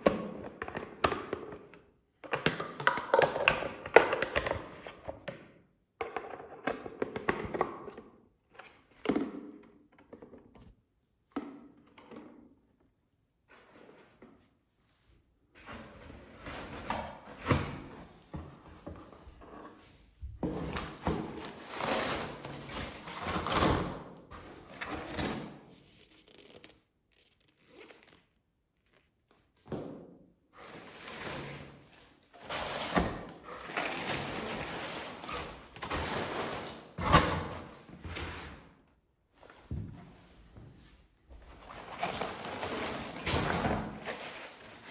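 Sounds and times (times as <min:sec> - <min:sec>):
packaging rustling and scraping: 0:15.6 - 0:23.6, 0:30.6 - 0:38.8, 0:41.0 - 0:44.9.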